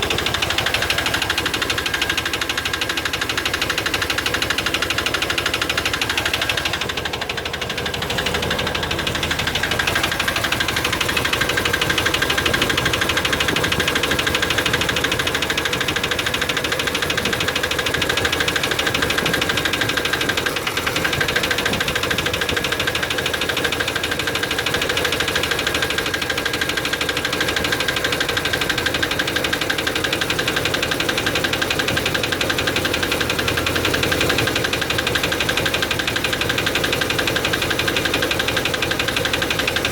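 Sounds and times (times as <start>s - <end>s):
engine running: 0.0s - 39.9s
rapid engine ticking: 0.0s - 39.9s.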